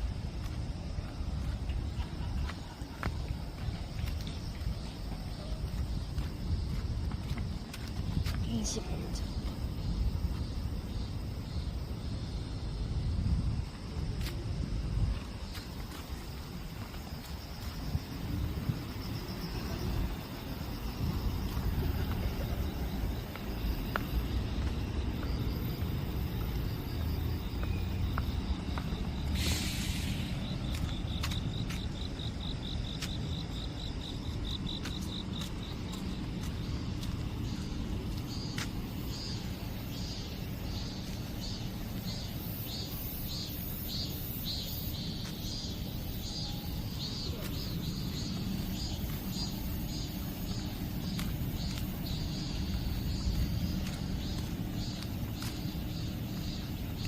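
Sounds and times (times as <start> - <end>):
steady low rumble: 0.0 - 42.8, 43.6 - 57.0
insects chirping: 0.0 - 57.0
hissing rustle: 29.3 - 30.4.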